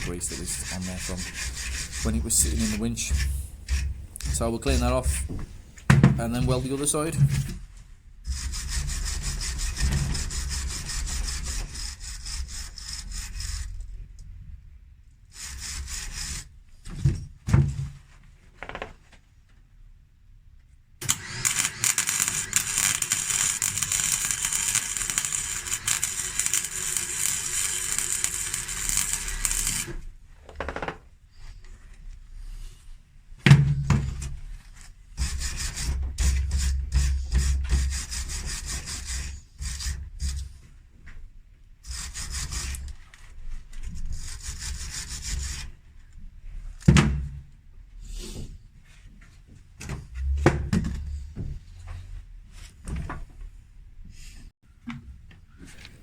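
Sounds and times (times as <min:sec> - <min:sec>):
arc welding crackling hiss: 0:00.0 - 0:07.2, 0:21.0 - 0:30.0
metal being scrubbed: 0:00.0 - 0:07.6, 0:22.6 - 0:29.8.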